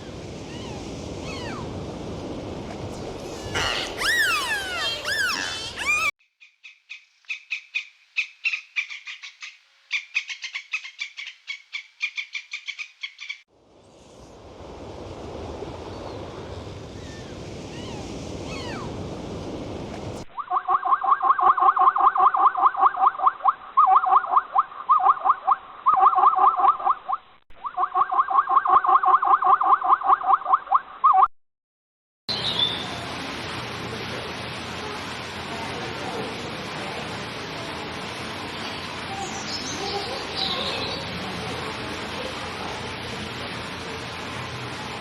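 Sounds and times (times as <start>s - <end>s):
steady hissing noise: 0.0s - 6.0s, 13.5s - 20.3s, 32.3s - 45.0s
loud fast pulsed animal calls: 0.5s - 1.7s, 3.2s - 6.1s, 17.0s - 18.9s
high short animal chirps: 3.3s - 6.1s.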